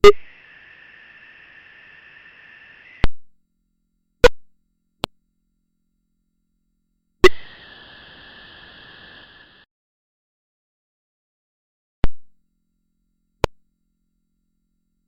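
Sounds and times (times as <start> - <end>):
faint steady hiss: 0.0 - 3.1, 7.2 - 9.6.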